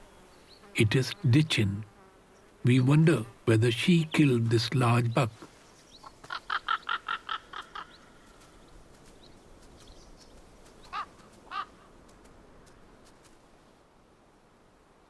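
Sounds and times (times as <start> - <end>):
crow-like bird calling harshly: 6.3 - 7.9, 10.9 - 11.8.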